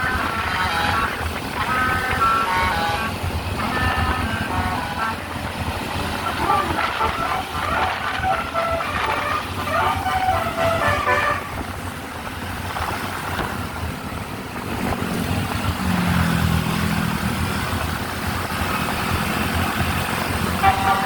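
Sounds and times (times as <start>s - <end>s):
bus horn tooting melody: 0.0s - 12.0s, 20.5s - 21.0s
vehicle engine and road noise: 0.0s - 21.0s.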